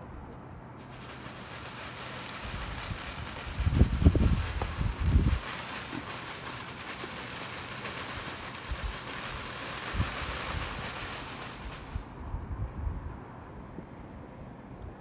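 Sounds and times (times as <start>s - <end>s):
firework fountain hissing: 0.8s - 12.4s.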